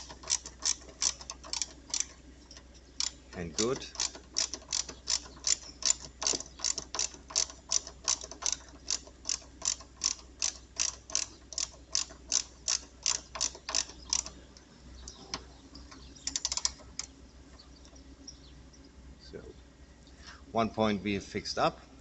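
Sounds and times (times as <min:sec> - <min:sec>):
ratchet wrench clicking: 0:00.0 - 0:14.4, 0:16.2 - 0:17.1.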